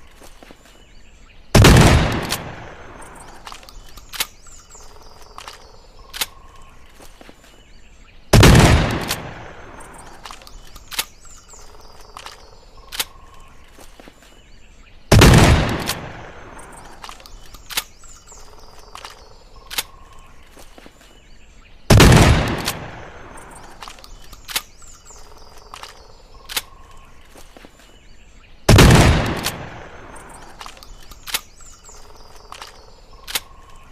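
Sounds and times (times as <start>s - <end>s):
shotgun blasts: 1.6s - 3.4s, 8.3s - 10.3s, 15.1s - 17.2s, 21.9s - 24.1s, 28.7s - 30.8s
gun action clicks: 2.1s - 7.3s, 8.9s - 14.0s, 15.6s - 20.3s, 22.5s - 27.6s, 29.2s - 33.9s.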